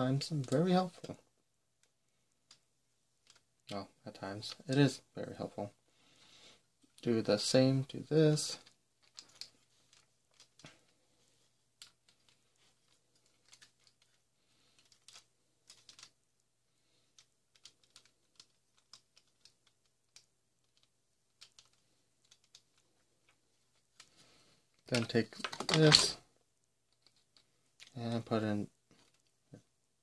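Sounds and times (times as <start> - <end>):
plastic parts clicking: 3.2 - 3.7, 8.6 - 11.0, 11.8 - 16.2, 17.1 - 26.2, 26.9 - 28.0, 28.9 - 29.4.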